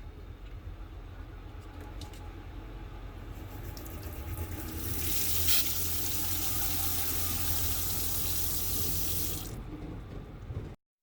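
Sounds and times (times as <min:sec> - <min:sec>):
water splashing into sink: 0:03.6 - 0:09.6.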